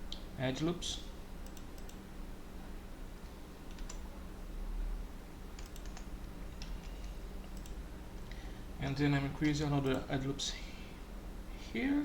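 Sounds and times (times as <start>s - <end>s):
steady low hum: 0.0s - 12.0s
keyboard and mouse clicks: 1.4s - 2.0s, 3.7s - 4.0s, 5.6s - 7.8s.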